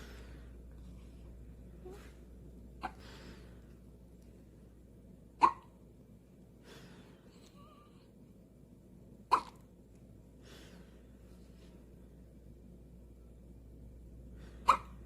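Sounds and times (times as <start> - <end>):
baby hiccupping: 5.4 - 5.7, 9.3 - 9.7.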